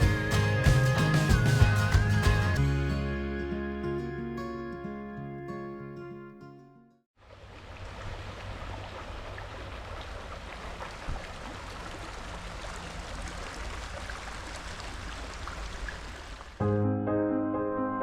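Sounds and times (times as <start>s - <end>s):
running water rushing: 7.2s - 16.6s.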